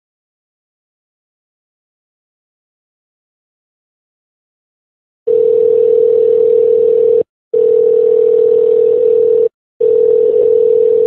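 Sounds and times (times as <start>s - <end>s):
telephone line tone: 5.3s - 11.0s.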